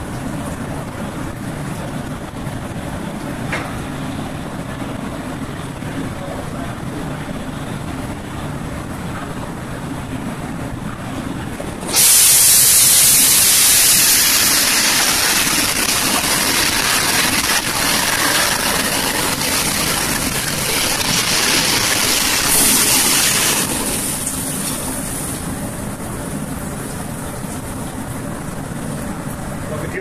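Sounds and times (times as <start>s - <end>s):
dishwasher spray hissing: 11.9s - 25.2s.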